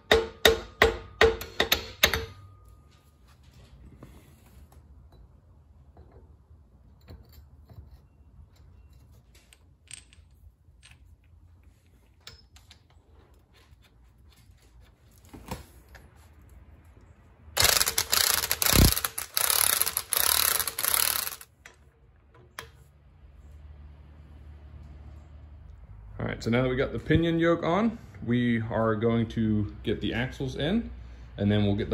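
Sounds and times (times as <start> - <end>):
impact wrench running: 17.6 - 21.5.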